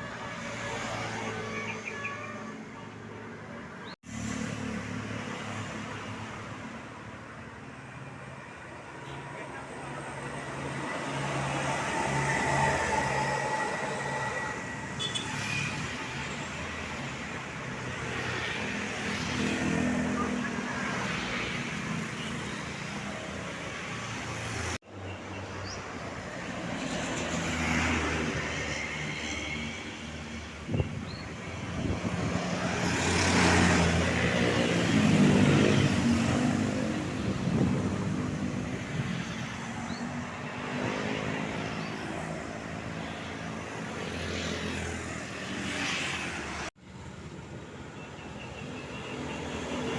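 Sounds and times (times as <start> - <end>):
vehicles passing: 0.0 - 49.9.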